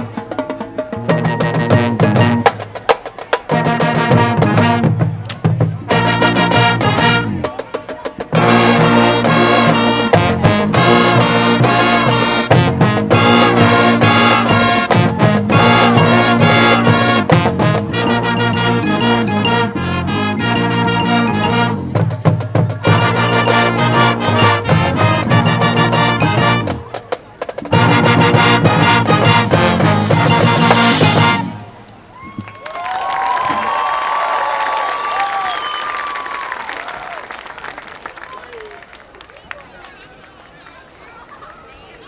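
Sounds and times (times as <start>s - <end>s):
marching band playing brass: 0.0s - 31.8s.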